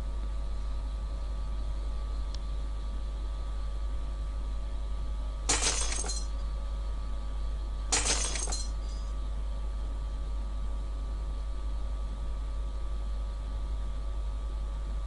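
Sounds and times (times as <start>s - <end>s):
steady low hum: 0.0s - 15.0s
window glass shattering: 5.5s - 6.2s, 8.0s - 8.7s.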